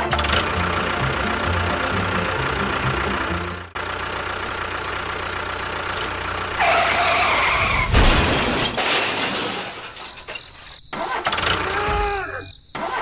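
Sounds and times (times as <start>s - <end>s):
low motor hum: 0.0s - 6.6s
loud screech: 6.6s - 8.8s, 9.9s - 13.0s
crash with heavy thud: 7.6s - 12.1s.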